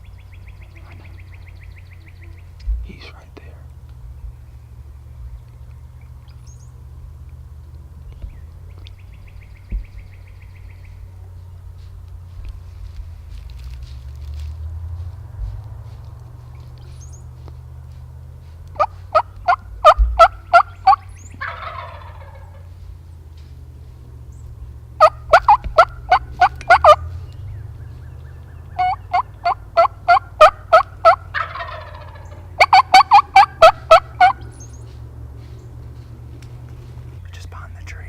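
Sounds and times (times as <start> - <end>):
turkey gobble: 18.7 - 22.8, 25.0 - 35.0
turkey yelps: 18.8 - 22.7, 25.0 - 27.1, 27.9 - 34.9.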